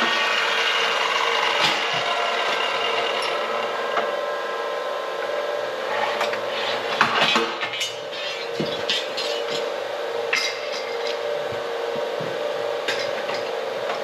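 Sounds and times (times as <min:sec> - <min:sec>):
power tool grinding steel: 0:00.0 - 0:04.5.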